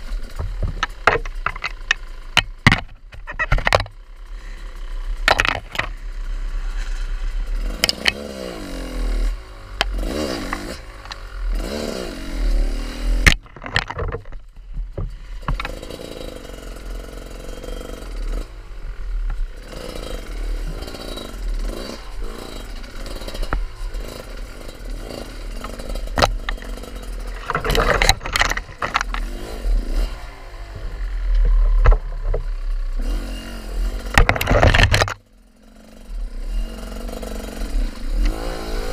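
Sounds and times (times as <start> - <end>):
motorcycle engine revving: 0.0 - 38.9
sharp knocks: 0.3 - 3.9.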